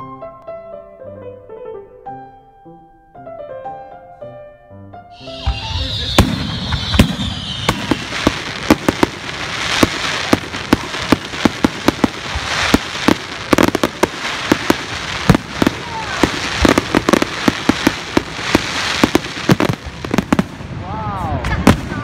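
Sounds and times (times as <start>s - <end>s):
piano music: 0.0s - 19.3s
firework hiss: 5.2s - 20.8s
firework bangs: 5.2s - 22.0s
fireworks crackling: 5.2s - 22.0s.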